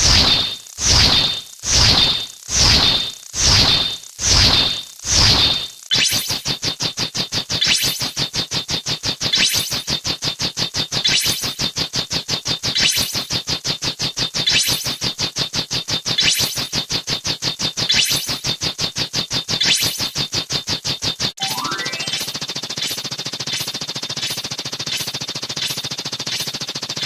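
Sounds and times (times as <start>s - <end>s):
fast electronic pulsing: 0.0s - 5.4s
bright high synth swell: 21.4s - 22.4s.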